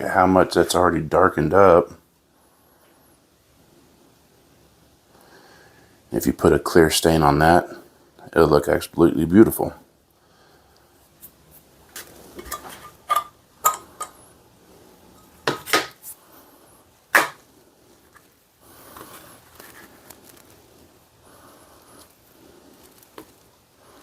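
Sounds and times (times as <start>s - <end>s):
rustling and shuffling: 10.9s - 13.3s, 14.8s - 24.0s
hard objects clinking and knocking: 12.4s - 14.2s.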